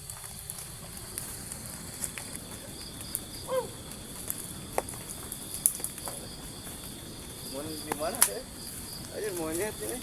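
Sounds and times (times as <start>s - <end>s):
insects droning: 0.0s - 10.0s
falling animal call: 3.4s - 3.9s.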